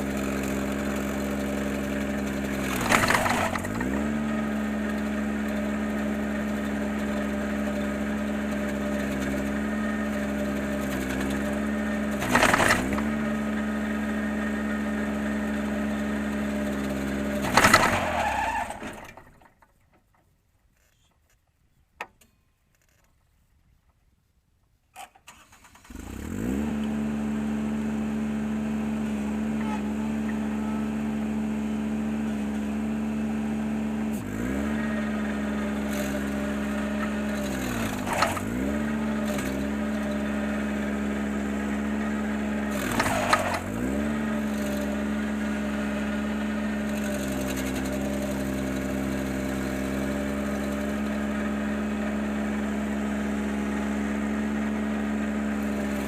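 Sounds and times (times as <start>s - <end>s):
tractor engine running: 0.0s - 24.1s, 24.7s - 56.0s
sharp cracks of grinder: 2.6s - 4.0s, 12.2s - 13.2s, 17.4s - 19.3s, 35.7s - 40.1s, 42.7s - 45.1s.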